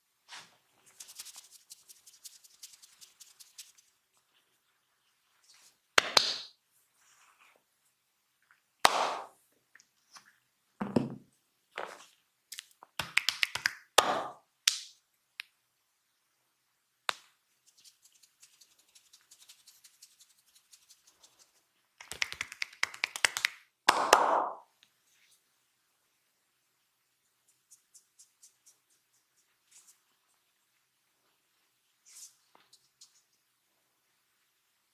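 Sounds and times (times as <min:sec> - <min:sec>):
faint rubbing on skin: 0:00.2 - 0:06.0, 0:06.8 - 0:08.0, 0:17.5 - 0:23.2, 0:27.2 - 0:33.5
hands slapping and tapping skin: 0:06.0 - 0:06.6, 0:08.8 - 0:09.4, 0:11.8 - 0:15.5, 0:17.1 - 0:24.6.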